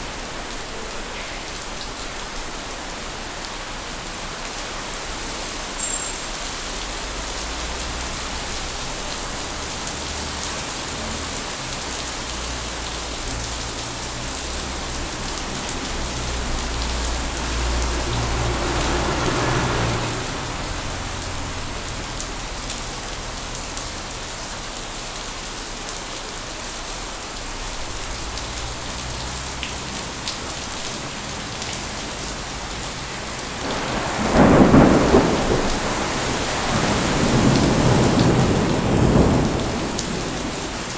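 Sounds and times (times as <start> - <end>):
rain: 0.0 - 40.9
thunder rolling: 33.5 - 40.9
sharp thunderclap: 33.6 - 40.9.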